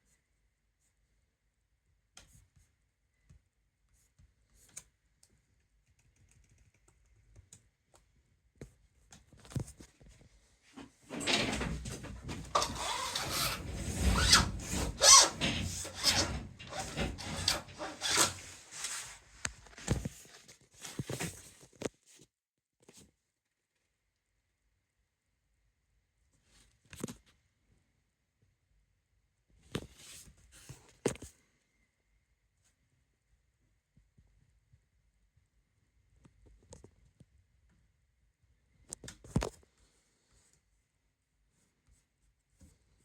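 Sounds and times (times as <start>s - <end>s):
faint clicks and taps: 2.1s - 10.3s
packaging rustling and scraping: 11.1s - 21.5s.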